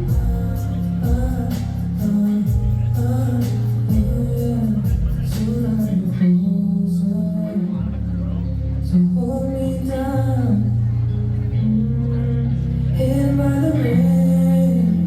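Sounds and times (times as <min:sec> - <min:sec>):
live band music: 0:00.0 - 0:06.2
deep bass: 0:00.0 - 0:15.0
person singing: 0:00.0 - 0:15.0.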